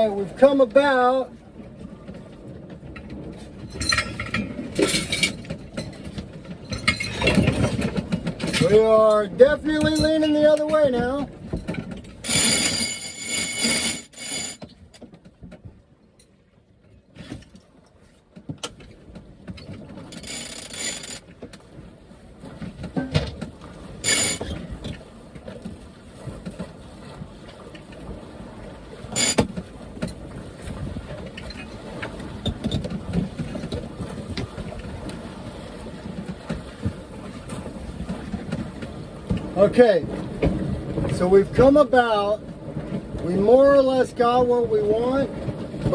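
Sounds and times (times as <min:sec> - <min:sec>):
rush of wind and water: 0:00.0 - 0:45.9
sharp knocks from boat: 0:01.6 - 0:08.8, 0:09.7 - 0:12.8, 0:14.6 - 0:15.8, 0:16.8 - 0:41.7.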